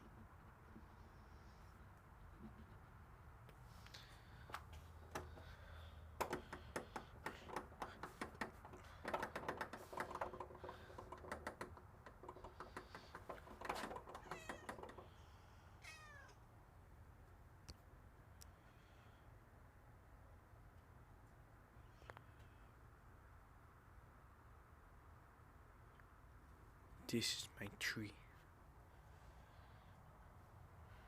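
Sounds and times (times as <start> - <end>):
quick sharp clicks and scratching: 6.2 - 15.1
cat meowing: 14.2 - 14.8, 15.8 - 16.4.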